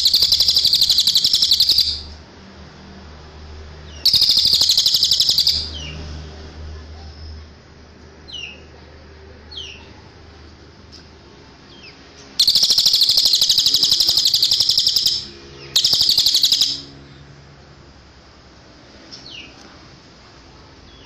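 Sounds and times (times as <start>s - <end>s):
songbird singing: 0.0s - 2.2s, 3.8s - 6.0s, 8.2s - 8.9s, 9.5s - 10.0s, 11.6s - 17.3s.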